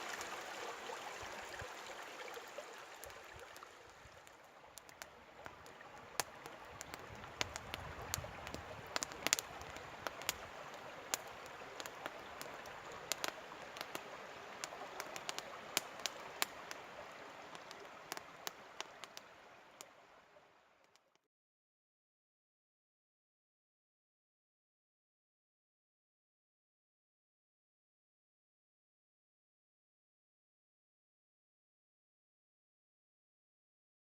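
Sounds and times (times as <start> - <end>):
stream water rushing: 0.0 - 20.9
water ticks and drips: 0.0 - 21.2.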